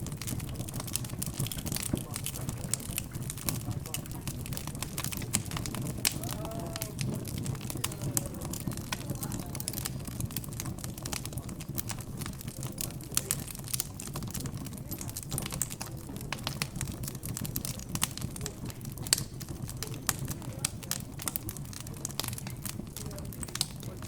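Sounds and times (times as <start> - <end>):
murmur of background chatter: 0.0 - 24.0
wood fire crackling: 0.0 - 24.0.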